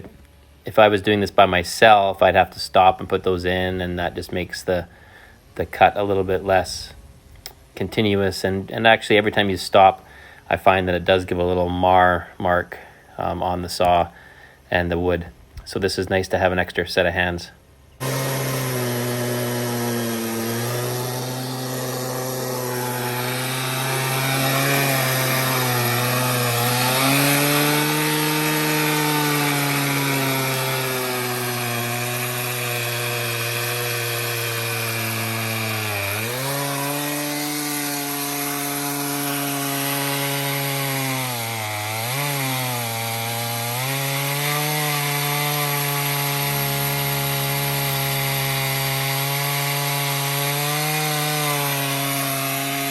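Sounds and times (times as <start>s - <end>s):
chainsaw cutting log: 0.0s - 5.0s, 18.0s - 52.9s.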